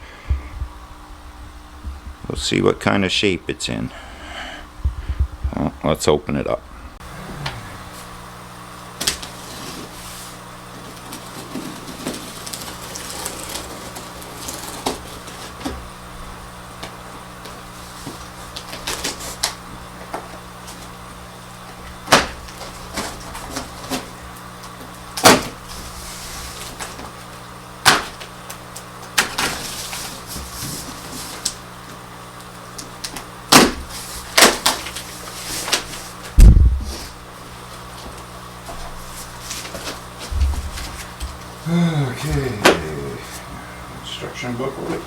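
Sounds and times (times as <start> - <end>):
cardboard snapping and crackling: 8.9 - 41.6
packing material rustling: 9.0 - 15.8.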